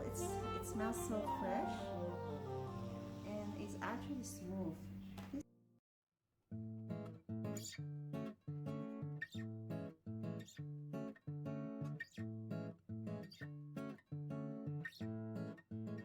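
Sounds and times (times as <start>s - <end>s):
acoustic guitar strumming chords: 0.0s - 5.2s.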